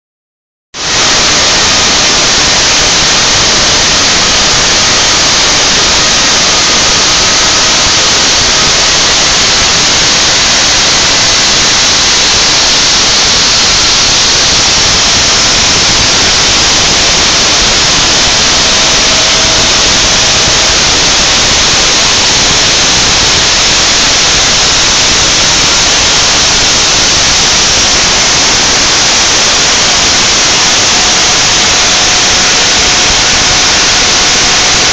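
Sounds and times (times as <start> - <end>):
cnc machine spindle hiss: 0.8 - 34.9.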